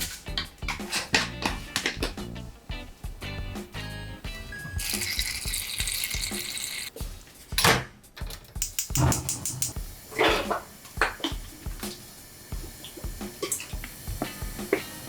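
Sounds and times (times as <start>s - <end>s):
kitchen knocks and clatters: 0.0s - 2.2s, 7.6s - 12.0s
water running: 0.0s - 7.0s, 8.8s - 15.0s.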